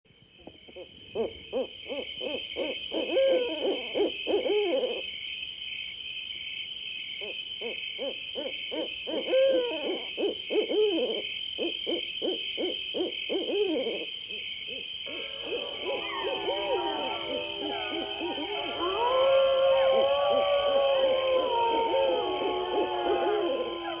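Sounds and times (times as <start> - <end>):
owl hooting: 1.2 - 5.0, 7.6 - 14.1, 14.7 - 24.0
high pulsing drone: 15.1 - 24.0.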